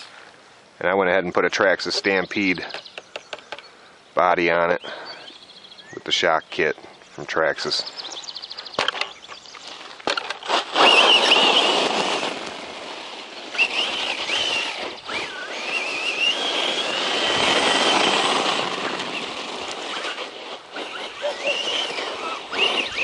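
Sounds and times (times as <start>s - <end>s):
tyres rushing on dirt: 9.6s - 23.0s
rc truck motor whine: 10.1s - 23.0s.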